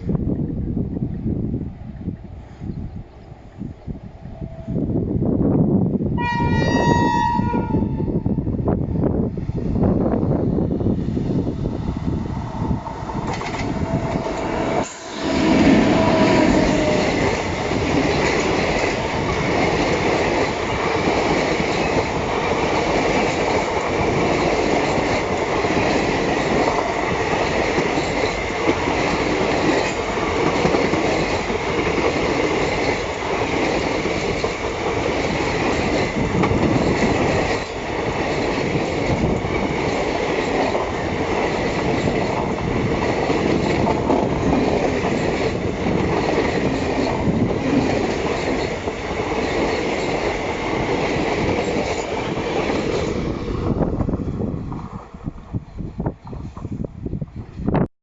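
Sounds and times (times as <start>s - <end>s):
train wheels clattering on rails: 12.8s - 55.0s.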